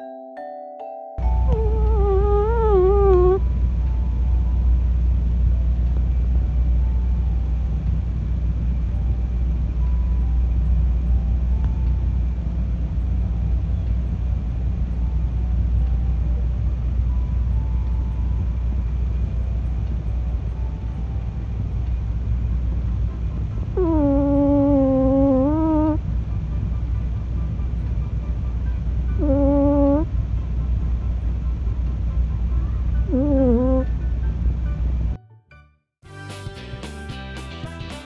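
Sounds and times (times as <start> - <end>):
cat snoring: 23.8 - 26.0, 29.2 - 30.1, 33.1 - 33.9.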